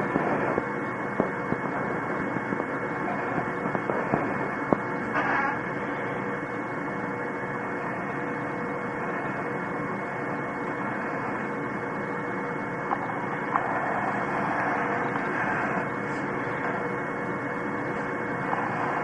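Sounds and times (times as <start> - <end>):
faint constant tone: 0.0 - 19.0
steady hum and hiss: 0.0 - 19.0.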